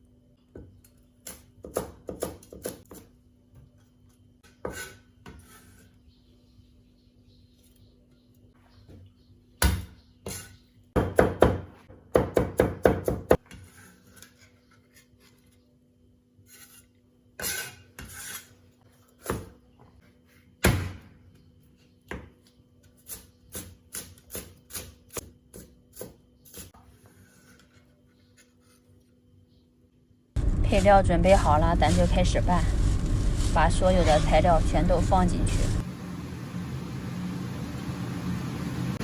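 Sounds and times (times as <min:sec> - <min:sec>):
knife chopping on cutting board: 0:01.2 - 0:03.1.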